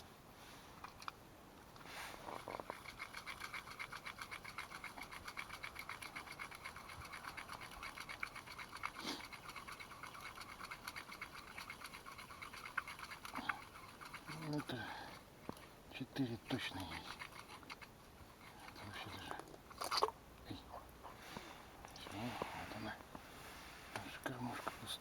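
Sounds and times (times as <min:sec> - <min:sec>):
fishing reel scratching: 0:02.4 - 0:15.0, 0:16.5 - 0:17.9.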